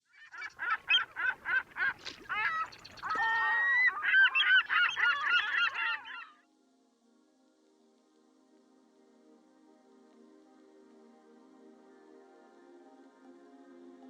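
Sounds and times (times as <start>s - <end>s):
music: 0.0s - 14.0s
birds calling: 0.2s - 6.3s.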